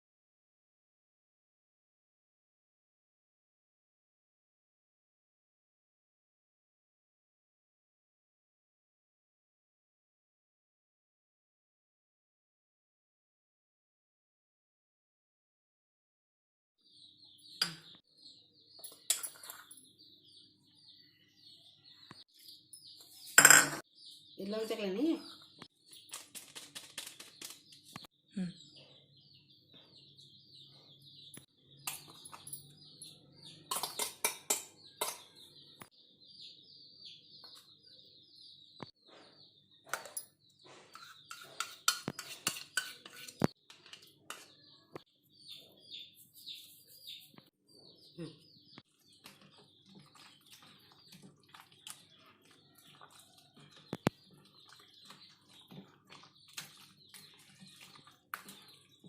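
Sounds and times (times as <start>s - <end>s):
small birds chirping: 16.8s - 59.0s.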